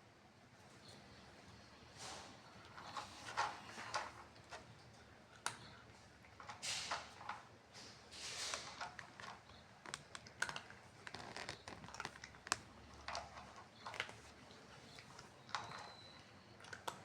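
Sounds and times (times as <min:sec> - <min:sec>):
cat chewing food: 0:08.6 - 0:17.0.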